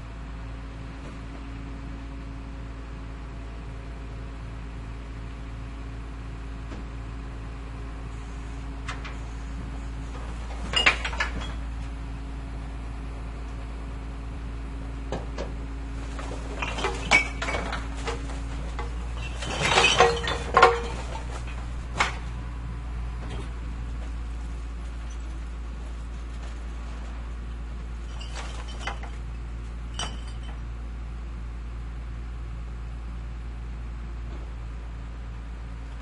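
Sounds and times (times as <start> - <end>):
garbage truck engine idling: 0.1 - 35.9
garbage container clattering: 10.2 - 11.6, 16.0 - 22.3, 28.0 - 29.2.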